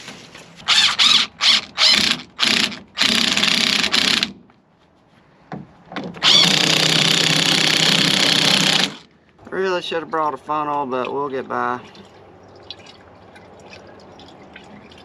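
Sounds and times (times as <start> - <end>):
cordless drill running: 0.7 - 4.4, 6.2 - 9.1.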